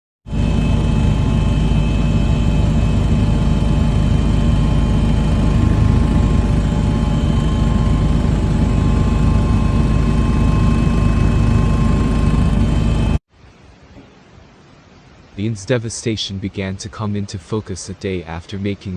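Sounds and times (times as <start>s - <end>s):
machine drone with deep rumble: 0.3s - 13.2s
whining tones: 0.3s - 13.2s.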